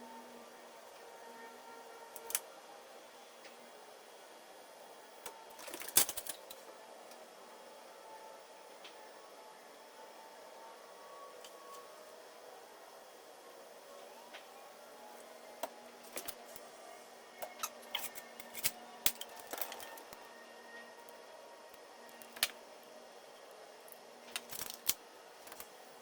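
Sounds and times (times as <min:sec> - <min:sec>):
faint steady hum: 0:00.0 - 0:26.0
small parts and tools clicking: 0:02.1 - 0:02.4, 0:05.2 - 0:07.2, 0:15.6 - 0:16.6, 0:17.4 - 0:20.2, 0:22.1 - 0:22.6, 0:23.9 - 0:25.7.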